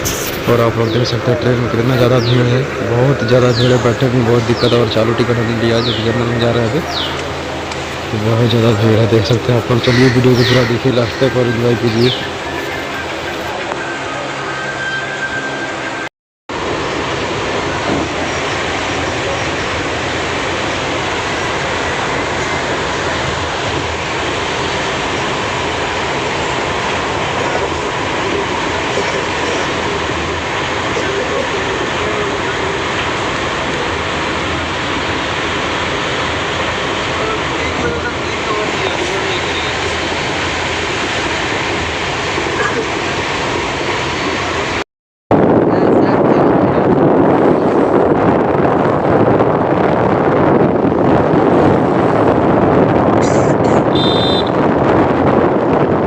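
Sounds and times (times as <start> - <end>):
train wheels on rails: 0.0 - 16.0, 16.6 - 44.8.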